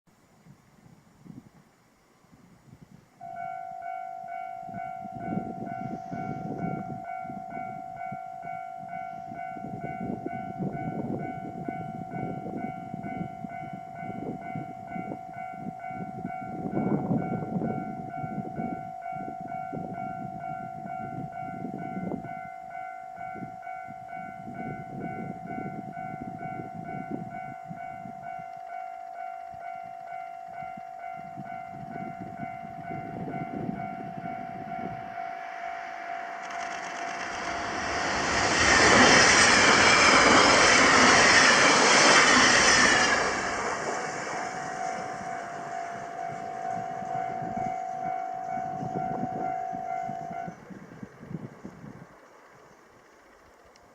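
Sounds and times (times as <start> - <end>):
level crossing alarm bell: 3.2 - 39.3, 42.6 - 50.7
low rumbling: 33.7 - 51.9.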